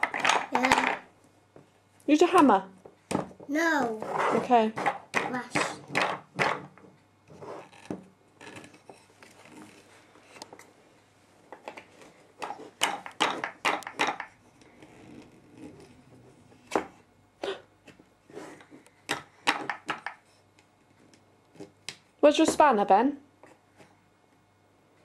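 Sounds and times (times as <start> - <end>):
toy hammer knocking on wood: 4.8 - 6.8, 12.5 - 14.3, 19.1 - 20.2.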